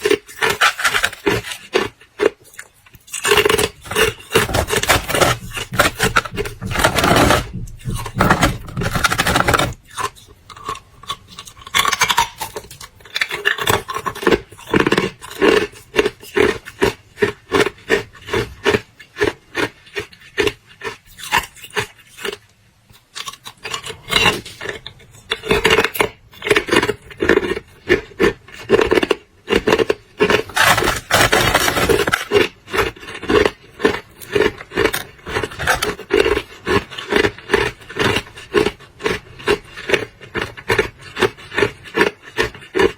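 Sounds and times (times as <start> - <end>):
ice being chewed: 0.0 - 42.9.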